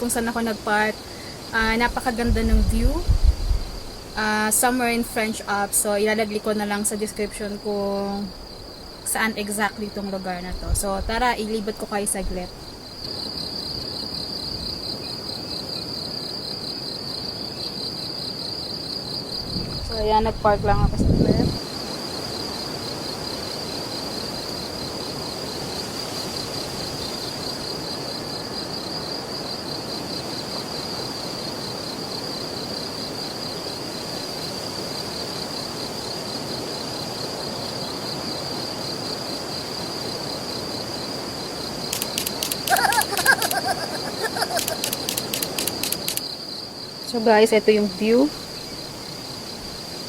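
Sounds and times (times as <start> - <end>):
crickets trilling: 0.0 - 50.0.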